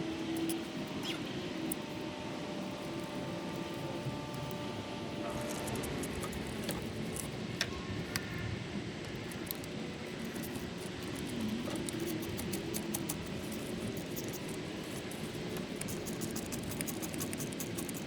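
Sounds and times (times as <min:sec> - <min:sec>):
steady background noise: 0:00.0 - 0:18.0
small parts clicking and rattling: 0:09.2 - 0:18.0.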